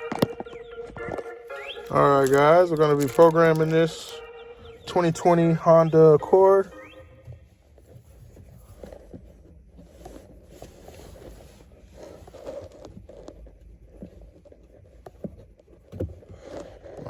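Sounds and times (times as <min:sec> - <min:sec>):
soft handling rustling: 0:00.0 - 0:17.0.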